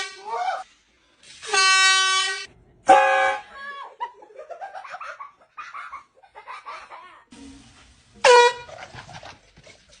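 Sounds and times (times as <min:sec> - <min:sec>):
air horn blast: 0:01.4 - 0:03.5, 0:08.2 - 0:08.7.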